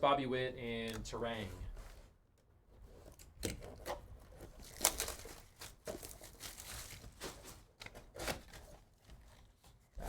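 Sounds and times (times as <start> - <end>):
wrapper tearing and crinkling: 4.6 - 8.5.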